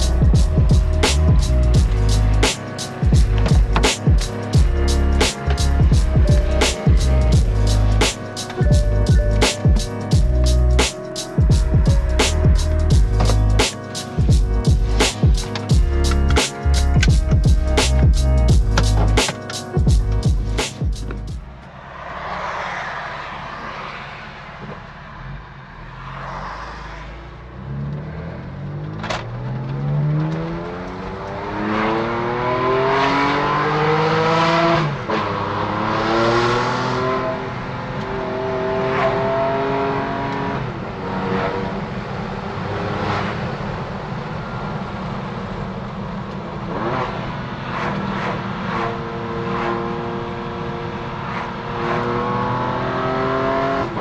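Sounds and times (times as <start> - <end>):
exhaust cracks at gear shifts: 0.0 - 21.6
car engine accelerating hard: 0.0 - 54.0.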